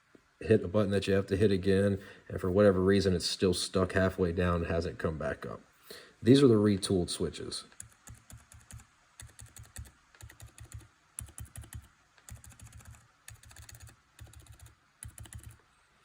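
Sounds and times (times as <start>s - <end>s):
muffled keyboard typing: 7.7s - 15.6s.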